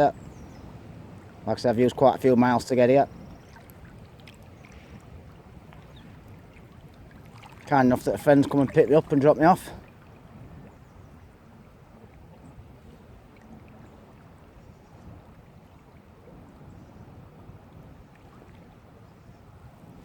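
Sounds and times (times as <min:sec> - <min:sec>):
river water flowing: 0:00.0 - 0:12.4.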